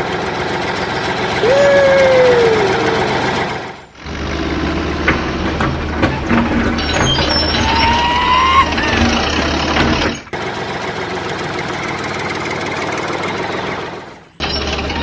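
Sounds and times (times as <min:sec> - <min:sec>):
heavy vehicle engine hum: 0:00.0 - 0:15.0
rushing noise: 0:01.4 - 0:10.2.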